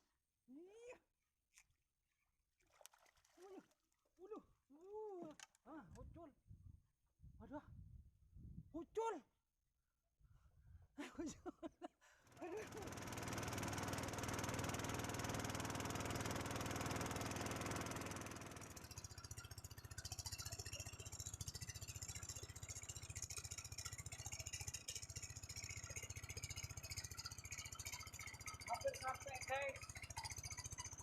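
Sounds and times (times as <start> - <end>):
small boat engine running: 12.2 - 31.0.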